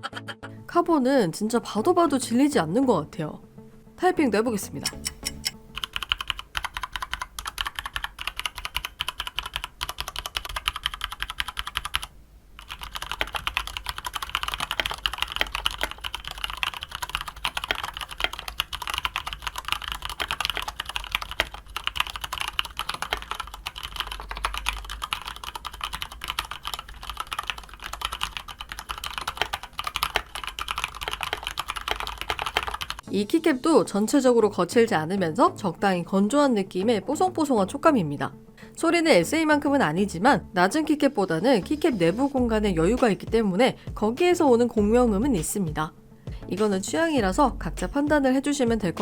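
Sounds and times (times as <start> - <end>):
typing on mechanical keyboard: 5.3 - 33.0.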